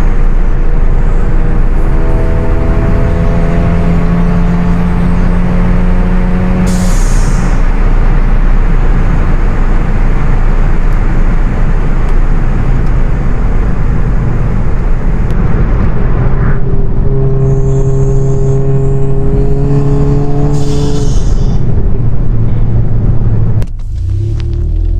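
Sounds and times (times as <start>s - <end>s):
car engine and exhaust rasp: 0.0s - 24.9s
faint high whine: 15.3s - 21.6s.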